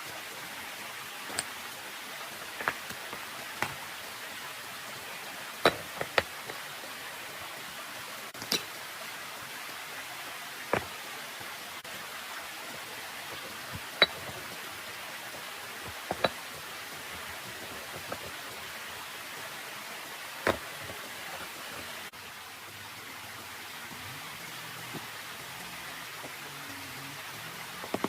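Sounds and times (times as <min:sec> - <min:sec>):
outdoor hiss: 0:00.0 - 0:28.0.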